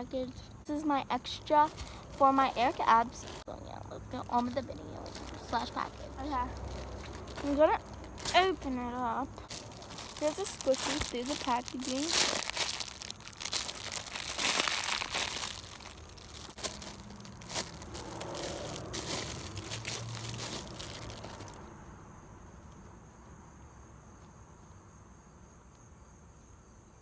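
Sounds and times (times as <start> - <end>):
packaging crinkling and tearing: 1.4 - 21.7.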